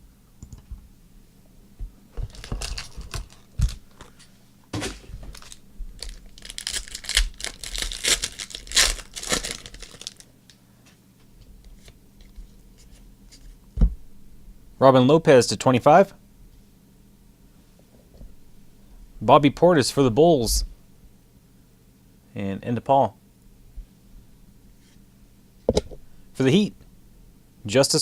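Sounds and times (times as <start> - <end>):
card pack wrapper tearing: 2.2 - 4.2, 5.3 - 10.3.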